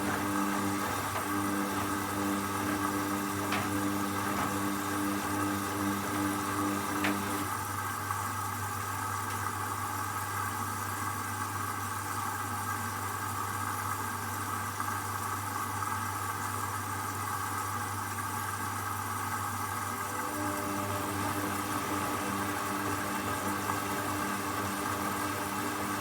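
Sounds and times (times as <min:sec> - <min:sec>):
washing machine low hum: 0:00.0 - 0:10.2, 0:19.4 - 0:26.0.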